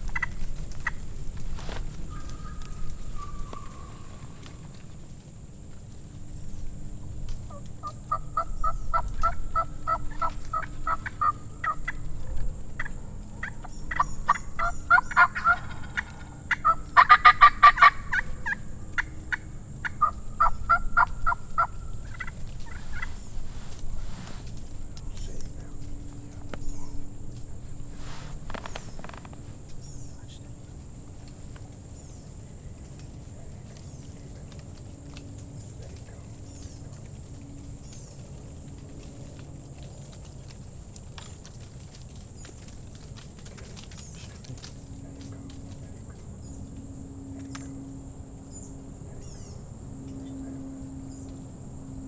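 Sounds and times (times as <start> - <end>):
wild turkey calling: 0.0 - 51.3.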